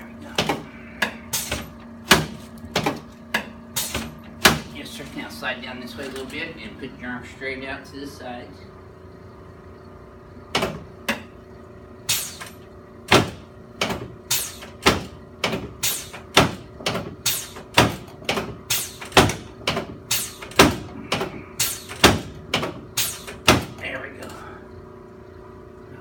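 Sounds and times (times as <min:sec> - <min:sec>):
faint steady hum: 0:00.0 - 0:26.0.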